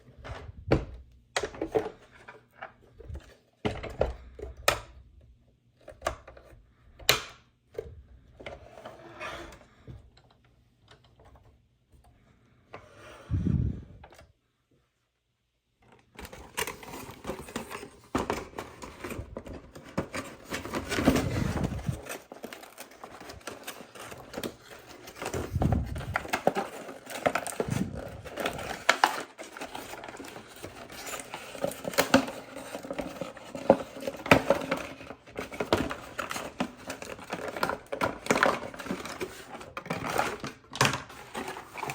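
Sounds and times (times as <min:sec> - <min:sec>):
plastic toys clicking and rattling: 0:15.8 - 0:41.9.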